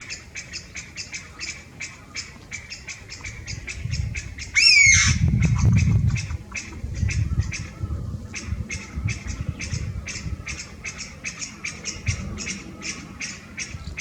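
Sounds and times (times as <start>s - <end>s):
bird chirping calls: 0.0s - 14.0s
bird drawn-out loud call: 4.5s - 5.2s.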